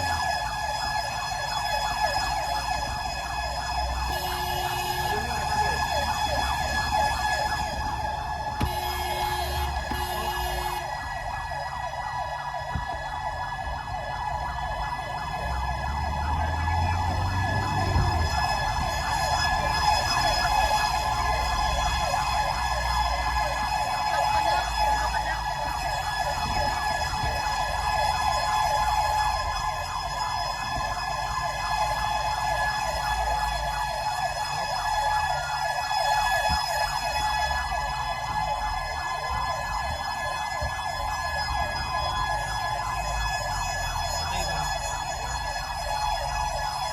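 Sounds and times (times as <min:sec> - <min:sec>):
siren continuous high tone: 0:00.0 - 0:46.9
vehicle engine: 0:03.9 - 0:11.2, 0:14.8 - 0:24.4.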